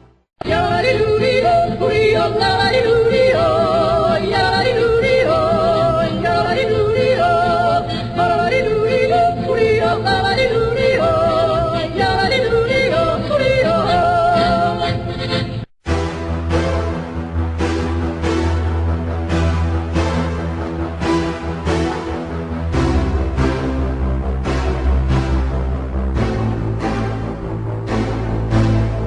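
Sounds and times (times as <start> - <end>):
solo voice singing with vibrato: 0.4 - 15.6
steady low accompaniment: 15.9 - 29.0.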